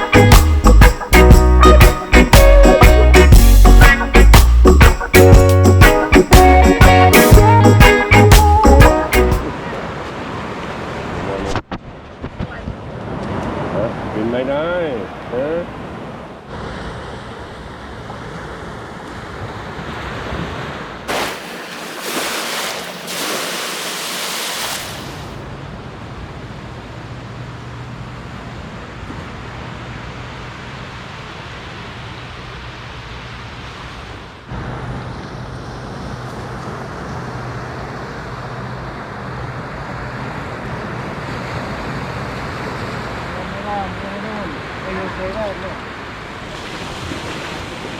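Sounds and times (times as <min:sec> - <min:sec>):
surf washing onto beach: 0:16.5 - 0:25.5, 0:41.8 - 0:47.9.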